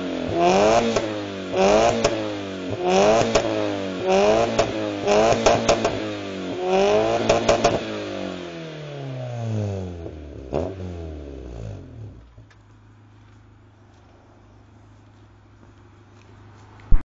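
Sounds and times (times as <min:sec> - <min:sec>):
car engine revving: 0:00.0 - 0:14.9
exhaust pops: 0:00.2 - 0:06.1, 0:06.9 - 0:08.0.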